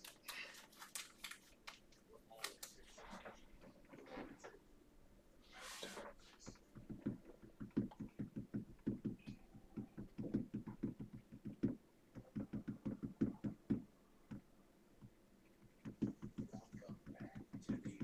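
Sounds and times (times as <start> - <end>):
rapid light taps: 6.4 - 18.0.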